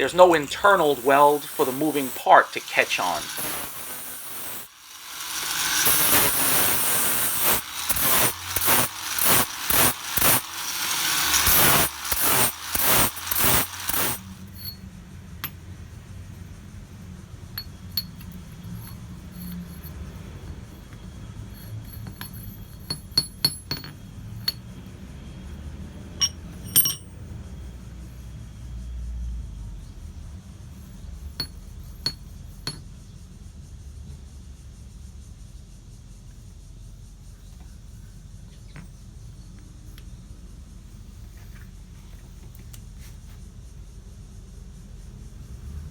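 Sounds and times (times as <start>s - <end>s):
harsh pulsing machine noise: 0.0s - 14.4s
light metallic clinks: 26.2s - 27.2s.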